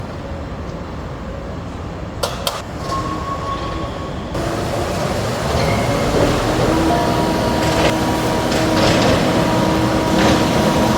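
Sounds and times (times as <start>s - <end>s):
steady mechanical rumble: 4.4s - 10.9s.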